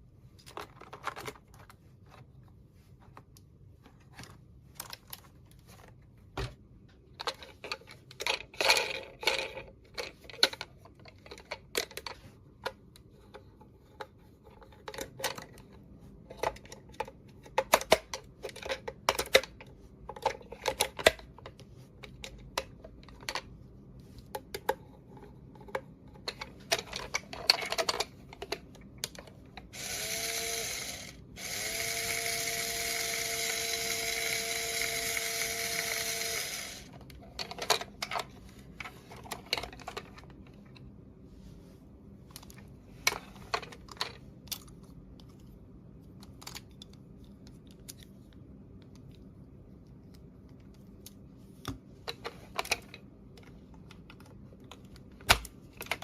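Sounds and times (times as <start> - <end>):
plastic toy pieces clicking: 26.3 - 38.2
toy motor whirring: 29.7 - 37.0.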